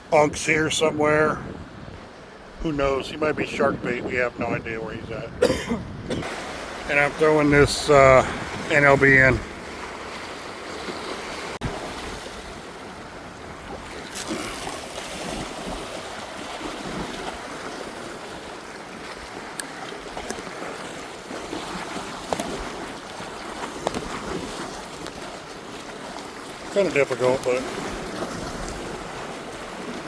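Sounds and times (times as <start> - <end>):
surf washing on shore: 0.0 - 30.0
wind buffeting microphone: 0.3 - 10.2.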